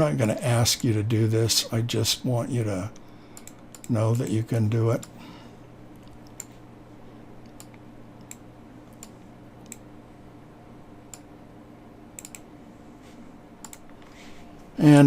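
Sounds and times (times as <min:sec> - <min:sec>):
faint electrical hum: 0:00.0 - 0:15.0
computer clicks: 0:03.3 - 0:04.0, 0:07.4 - 0:09.9, 0:11.1 - 0:11.3, 0:12.2 - 0:12.5, 0:13.6 - 0:14.0.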